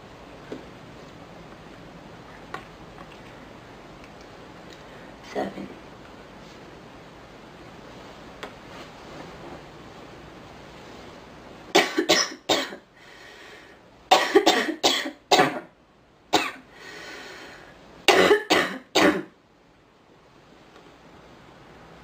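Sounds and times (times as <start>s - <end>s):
girl coughing: 11.8s - 12.8s, 14.1s - 15.7s, 16.4s - 16.6s, 18.1s - 19.4s.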